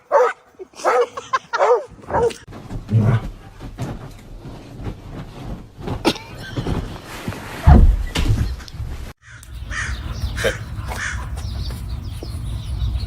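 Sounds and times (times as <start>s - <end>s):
dog barking: 0.0s - 2.4s.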